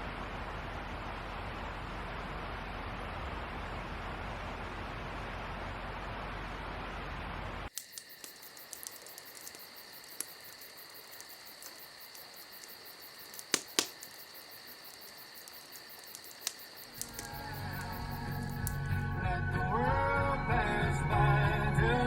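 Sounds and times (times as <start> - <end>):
insects chirping: 7.7 - 19.2
sharp clicks: 7.7 - 19.2.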